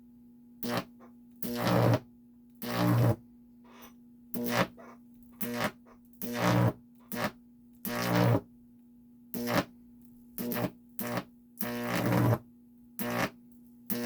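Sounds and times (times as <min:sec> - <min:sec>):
buzzing electric arc zaps: 0:00.6 - 0:03.2, 0:04.4 - 0:04.8, 0:05.4 - 0:08.4, 0:09.4 - 0:09.7, 0:10.4 - 0:12.4, 0:13.0 - 0:14.0.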